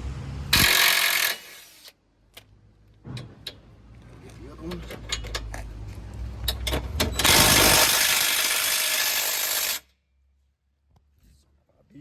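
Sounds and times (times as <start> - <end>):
impact wrench hammering on a nut: 0.6 - 1.4.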